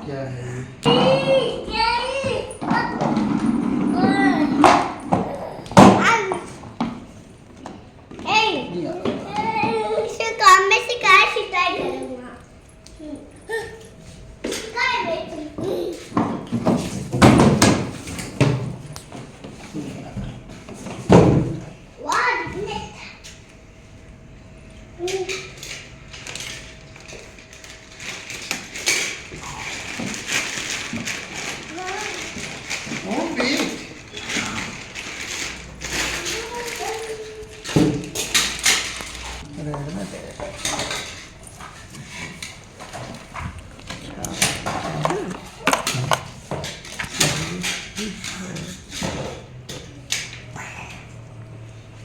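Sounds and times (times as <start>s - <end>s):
hard objects clicking and clattering: 25.0s - 50.5s.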